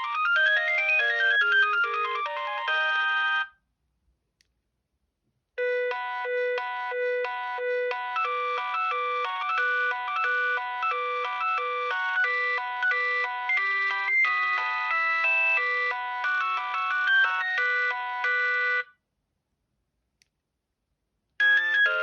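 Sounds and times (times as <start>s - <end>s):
synthesized phone ringtone melody: 0.0s - 3.6s, 5.6s - 18.9s, 21.4s - 22.0s.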